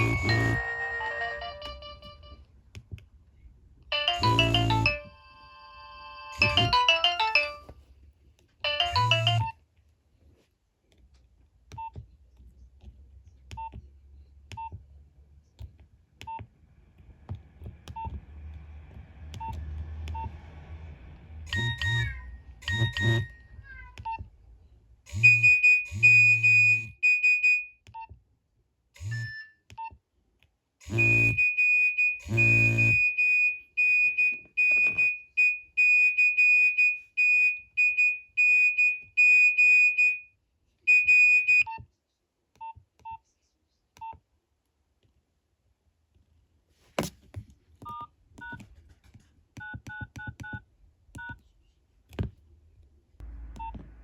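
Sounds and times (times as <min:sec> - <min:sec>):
keypad beeps and key clicks: 0:00.0 - 0:00.7, 0:11.7 - 0:12.0, 0:13.5 - 0:13.8, 0:21.5 - 0:23.4, 0:30.9 - 0:40.2, 0:40.9 - 0:41.9, 0:44.0 - 0:44.2, 0:47.8 - 0:48.6, 0:49.6 - 0:51.4
phone vibrating buzz: 0:00.0 - 0:01.0, 0:04.2 - 0:05.0, 0:21.5 - 0:23.4, 0:25.1 - 0:26.9, 0:30.8 - 0:31.6, 0:32.2 - 0:33.1
phone alert beeping: 0:00.0 - 0:02.4, 0:03.9 - 0:07.7, 0:08.7 - 0:09.5, 0:21.5 - 0:23.4, 0:25.1 - 0:27.7, 0:30.8 - 0:40.2.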